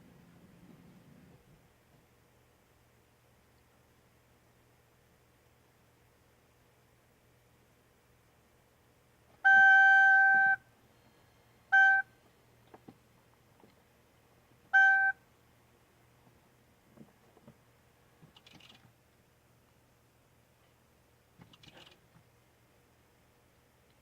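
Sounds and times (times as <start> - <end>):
short beeps: 9.4 - 12.1, 14.8 - 15.2
dashboard warning chime: 14.8 - 15.2.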